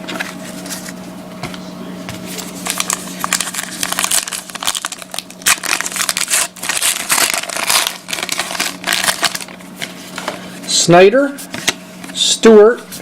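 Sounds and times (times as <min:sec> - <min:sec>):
card pack wrapper crinkling: 0:02.3 - 0:10.4.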